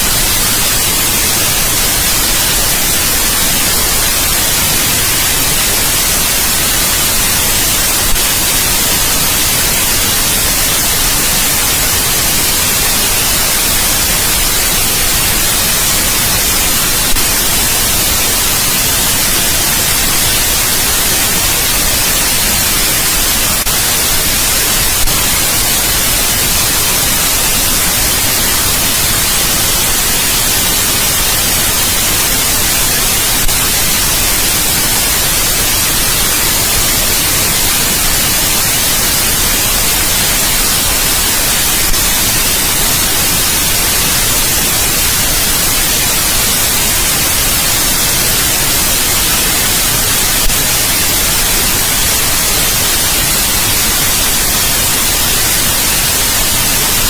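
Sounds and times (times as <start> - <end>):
white noise hiss: 0.0 - 57.0.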